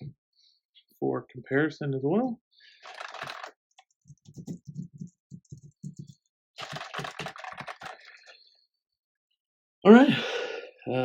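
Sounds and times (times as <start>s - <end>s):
dull keyboard keystrokes: 2.8s - 8.2s
sharp keyboard clatter: 2.8s - 8.2s.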